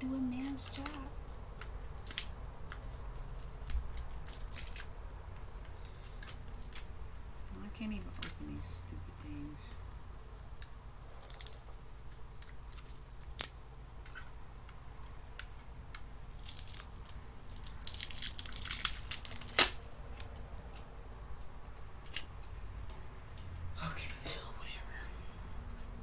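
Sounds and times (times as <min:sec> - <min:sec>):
sharp clicks and snaps: 0:00.4 - 0:06.9
packaging tearing and crinkling: 0:02.0 - 0:05.1, 0:05.7 - 0:07.0, 0:10.6 - 0:13.6, 0:16.3 - 0:20.9.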